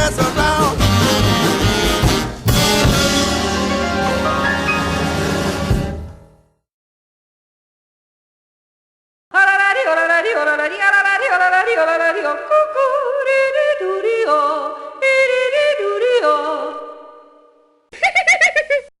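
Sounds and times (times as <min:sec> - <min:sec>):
background music: 0:00.0 - 0:06.6.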